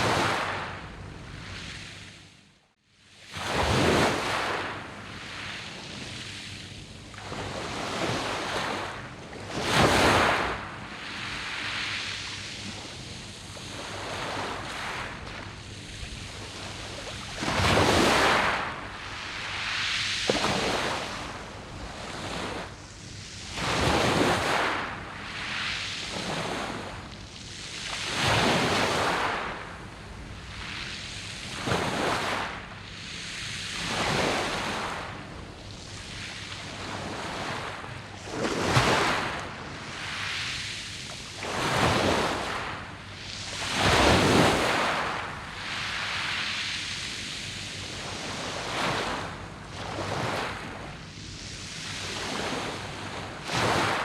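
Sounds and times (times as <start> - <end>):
waves breaking on pebble beach: 3.4 - 5.6, 9.5 - 12.0, 15.8 - 22.7, 23.5 - 26.9, 28.0 - 29.6, 31.5 - 32.5, 33.8 - 35.1, 36.6 - 46.6, 47.8 - 50.7, 51.9 - 54.0.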